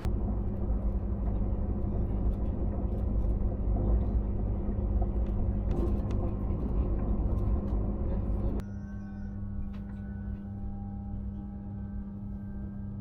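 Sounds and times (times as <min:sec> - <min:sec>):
vehicle rumble: 0:00.0 - 0:08.7
constant hum: 0:00.0 - 0:13.0.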